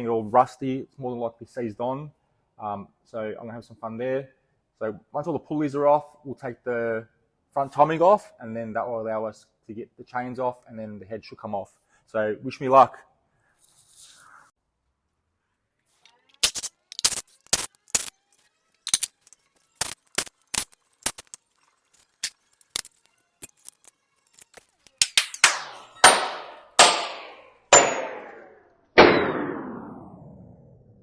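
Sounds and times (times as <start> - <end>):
hammer striking metal: 25.0 - 29.6.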